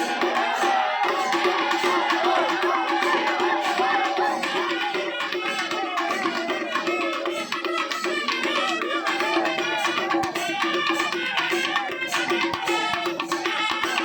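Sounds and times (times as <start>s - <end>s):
hand drum beats: 0.0s - 14.0s.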